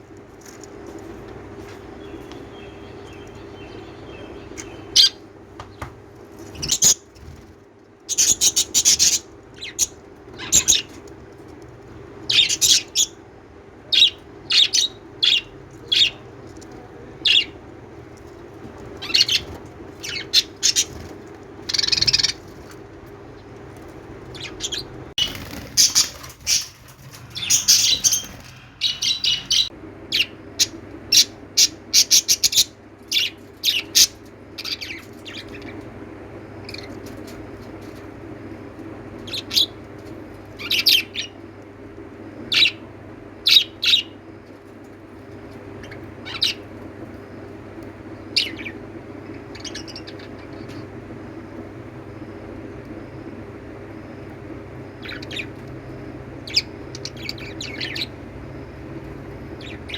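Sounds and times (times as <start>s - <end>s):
faint low hum: 0.0s - 59.9s
parrots chirping: 6.5s - 7.2s, 8.1s - 11.0s, 12.3s - 13.2s, 13.9s - 16.4s, 17.2s - 17.6s, 18.9s - 22.8s, 24.2s - 35.7s, 45.8s - 46.6s, 56.4s - 58.2s, 59.5s - 59.9s.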